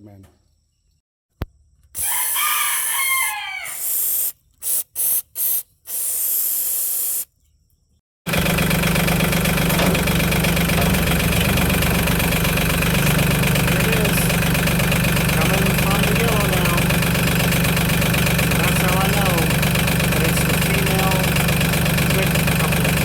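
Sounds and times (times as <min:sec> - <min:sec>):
aerosol spray hissing: 0:02.0 - 0:02.9, 0:03.7 - 0:07.3
rooster crowing: 0:02.0 - 0:03.9
tractor diesel engine idling: 0:08.3 - 0:23.0.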